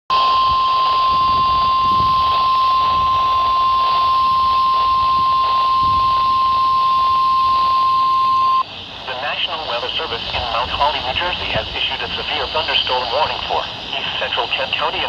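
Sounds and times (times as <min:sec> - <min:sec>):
steady high alarm tone: 0:00.1 - 0:08.7
radio reception hiss: 0:00.1 - 0:15.0.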